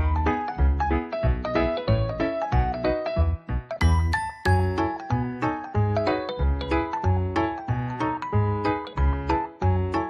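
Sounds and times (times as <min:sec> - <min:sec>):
keyboard and bell notes: 0:03.6 - 0:10.0.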